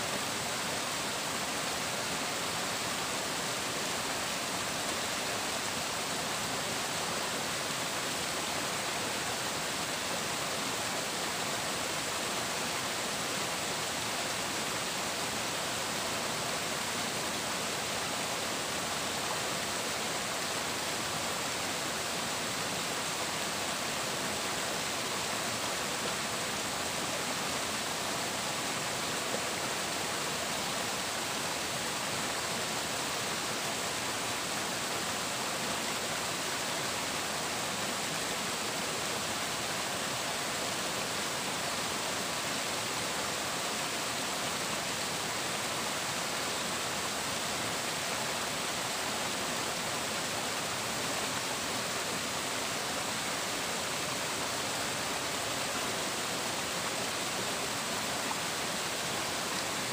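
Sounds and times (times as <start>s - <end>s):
water flowing: 0.0s - 59.9s.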